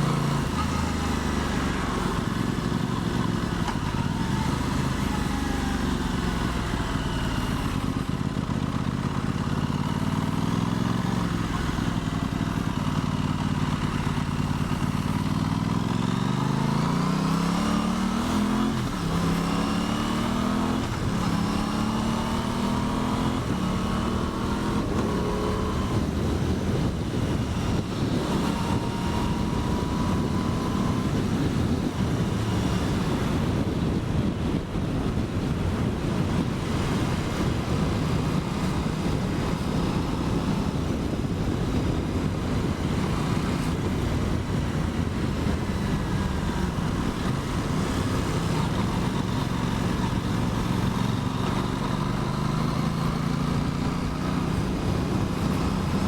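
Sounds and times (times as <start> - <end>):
motorcycle engine revving: 0.0 - 56.0
wind rush: 18.2 - 56.0.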